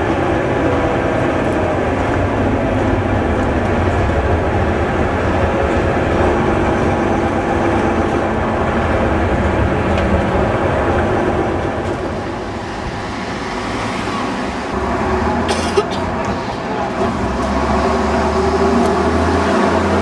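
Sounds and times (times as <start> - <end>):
bus engine droning: 0.0 - 20.0.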